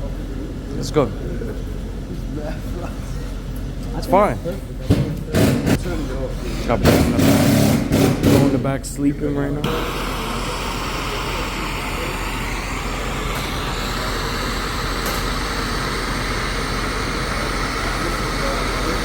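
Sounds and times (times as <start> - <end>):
gas torch hissing: 9.6 - 19.0.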